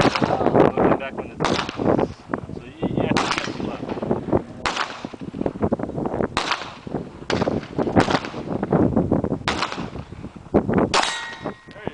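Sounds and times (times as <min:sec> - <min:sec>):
pistol shots with echo: 0:00.0 - 0:00.5, 0:01.4 - 0:01.9, 0:03.1 - 0:04.0, 0:04.6 - 0:05.3, 0:06.4 - 0:08.5, 0:09.5 - 0:10.0, 0:10.9 - 0:11.5.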